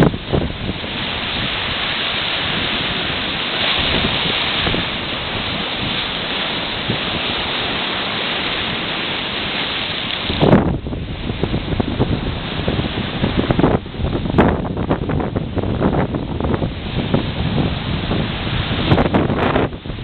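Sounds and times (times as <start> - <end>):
waves breaking and washing: 0.0 - 20.0
wind buffeting microphone: 0.0 - 20.0.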